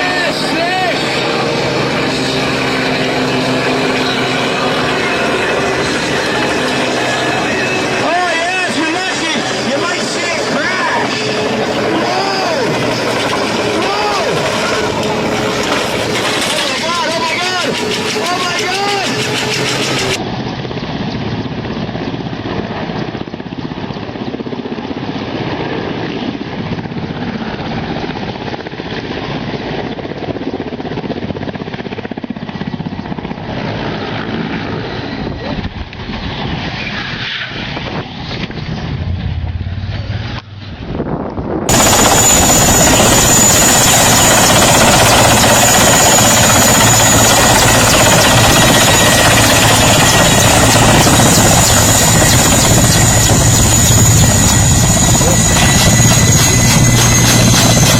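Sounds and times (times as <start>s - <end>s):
helicopter rotor and engine: 0.0s - 57.9s
high whine: 37.5s - 57.9s.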